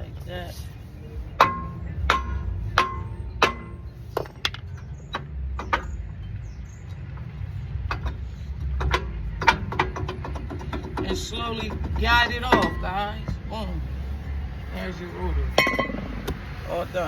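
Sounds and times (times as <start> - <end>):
steady low rumble: 0.0 - 17.0
sharp metallic knocks with ring: 1.4 - 6.4, 7.9 - 13.1, 15.6 - 16.4.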